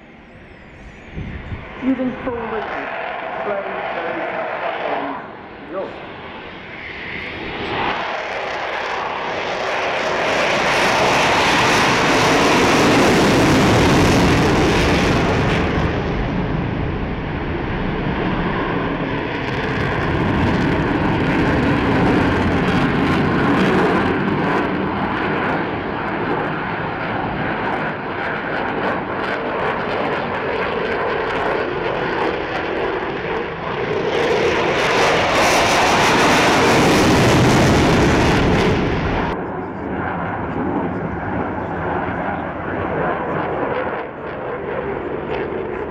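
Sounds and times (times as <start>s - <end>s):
aircraft engine roar: 0.0s - 45.9s.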